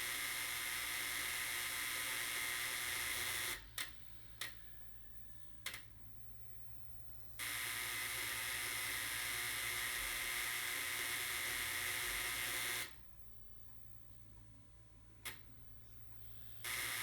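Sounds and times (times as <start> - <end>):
harsh hissing electrical buzz: 16.3 - 17.0.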